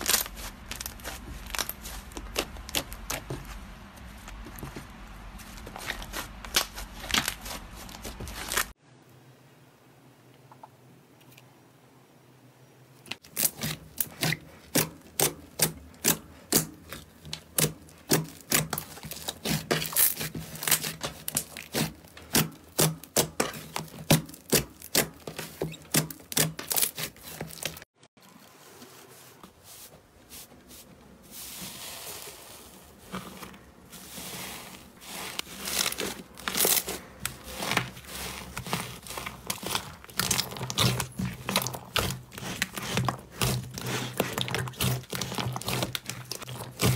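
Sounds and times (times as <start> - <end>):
slime crackling and popping: 0.0 - 3.3, 35.1 - 46.9.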